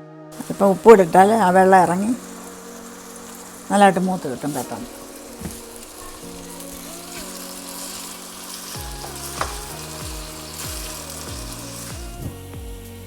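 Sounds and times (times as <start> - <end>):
onions sizzling in hot oil: 0.4 - 13.0
background music with low beat: 8.8 - 13.0.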